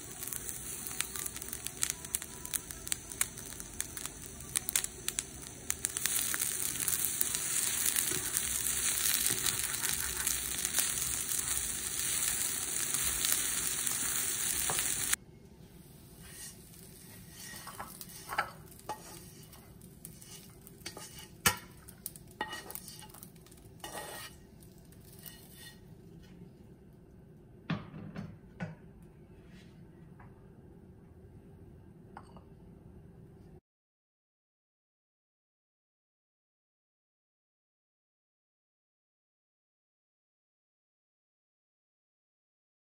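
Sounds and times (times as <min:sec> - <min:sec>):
food sizzling in frying pan: 0:00.0 - 0:15.2, 0:15.8 - 0:25.8.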